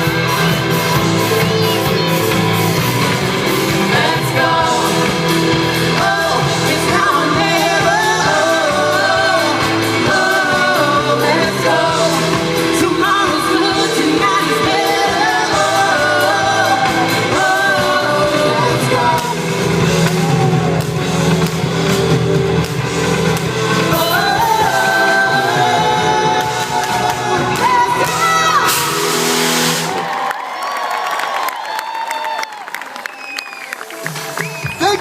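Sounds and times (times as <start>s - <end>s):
amplified rock music: 0.0s - 30.2s
person singing: 3.6s - 20.7s, 23.7s - 29.5s.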